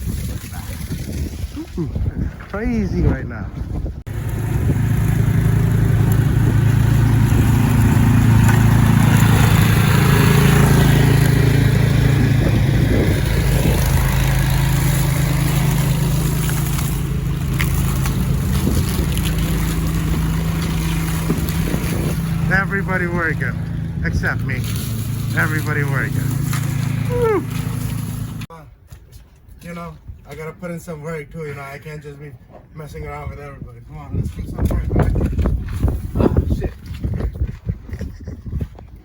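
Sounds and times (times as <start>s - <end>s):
snow-clearing machine engine running: 4.1s - 28.5s.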